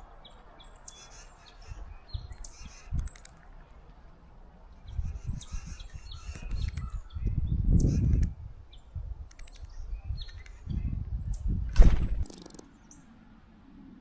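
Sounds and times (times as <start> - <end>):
birds chirping and whistling: 0.2 - 3.2, 4.8 - 11.6
sharp clicks: 2.9 - 3.4, 6.3 - 7.0, 9.2 - 10.6.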